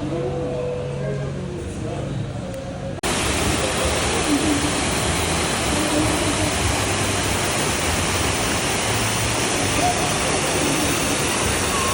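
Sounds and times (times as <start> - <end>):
faint voices: 0.0 - 11.9
waterfall rushing: 3.0 - 11.9.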